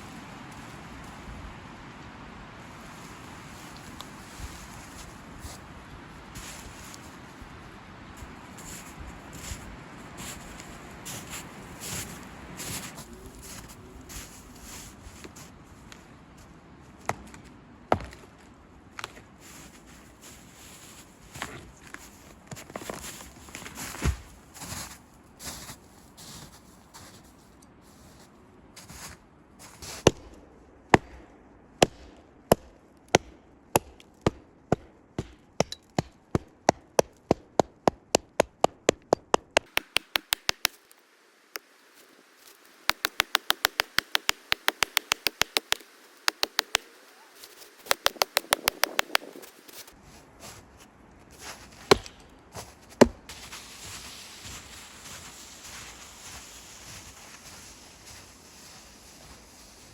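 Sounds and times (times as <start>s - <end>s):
tool striking wood: 31.8s - 40.8s, 42.9s - 46.9s, 47.8s - 49.8s.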